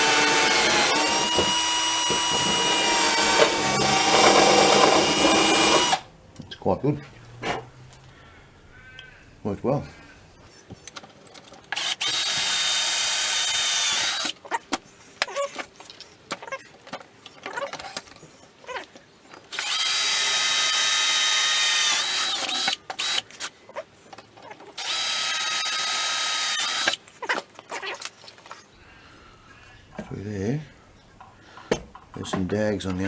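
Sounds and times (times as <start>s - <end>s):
electric drill whine: 0.0s - 6.1s, 11.8s - 14.3s, 19.5s - 23.2s, 24.8s - 27.0s.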